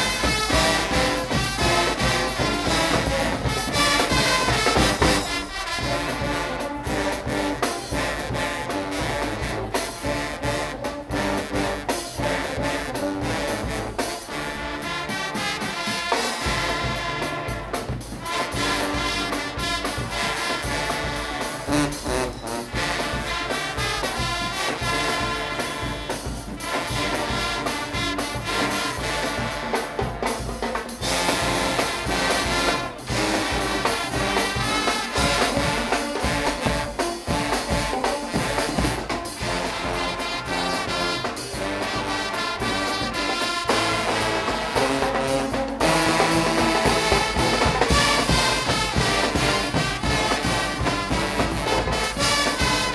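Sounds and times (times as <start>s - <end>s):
drums and percussion: 0.0s - 52.9s
loud brass: 0.0s - 52.9s.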